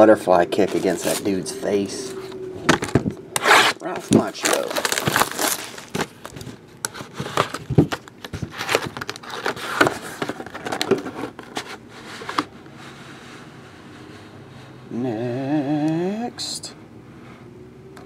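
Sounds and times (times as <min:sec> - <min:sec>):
packaging crinkling and rustling: 0:00.6 - 0:12.5.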